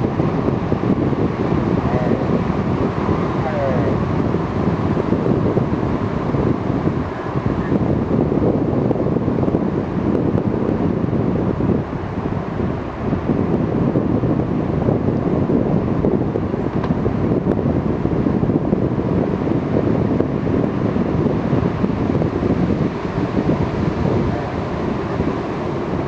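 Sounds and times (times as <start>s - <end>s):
low rumble of wind and water: 0.0s - 26.0s.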